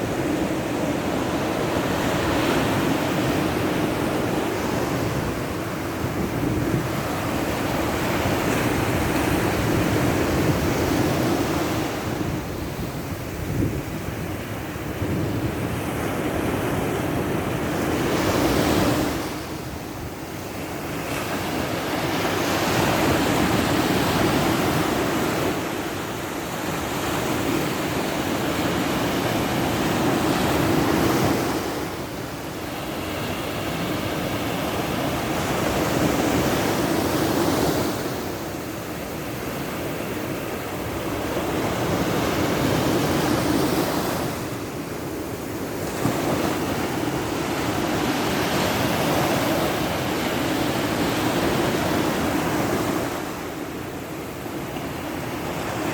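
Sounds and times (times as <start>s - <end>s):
wind on microphone: 0.0s - 39.8s
sea waves breaking on shore: 0.0s - 55.9s.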